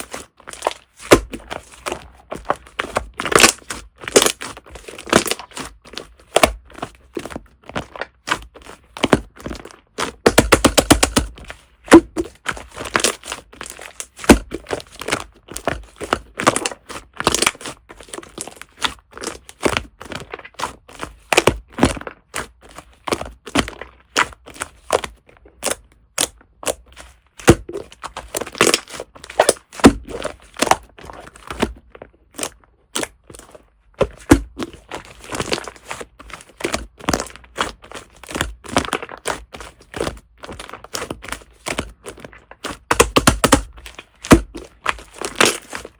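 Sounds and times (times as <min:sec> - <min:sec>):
slime squished by hand: 0:00.0 - 0:45.9.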